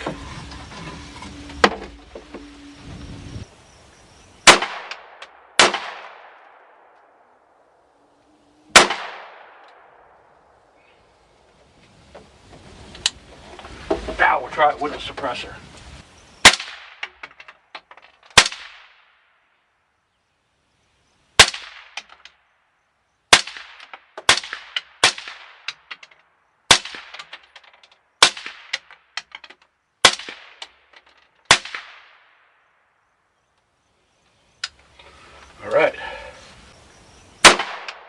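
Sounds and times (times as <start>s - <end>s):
rifle shots with echo: 4.4s - 7.3s, 8.7s - 10.3s, 16.4s - 17.1s, 18.4s - 19.2s, 31.5s - 32.4s, 37.4s - 38.0s.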